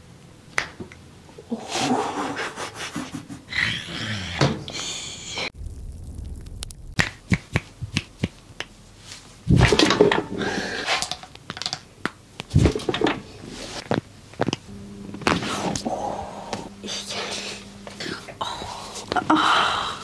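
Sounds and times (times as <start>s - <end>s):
steady low hum: 5.2s - 10.8s, 11.9s - 20.0s.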